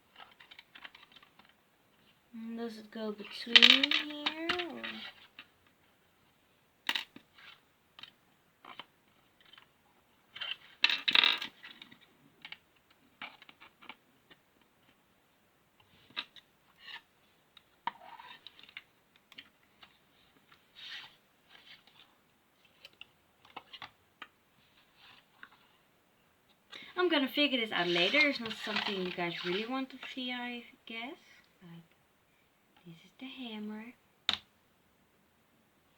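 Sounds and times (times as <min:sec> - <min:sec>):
plastic building blocks clicking: 0:03.4 - 0:05.5.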